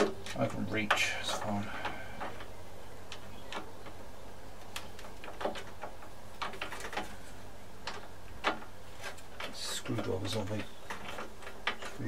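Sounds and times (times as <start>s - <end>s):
clicks and taps of engine parts: 0.0s - 2.5s, 4.6s - 7.2s, 7.8s - 12.0s.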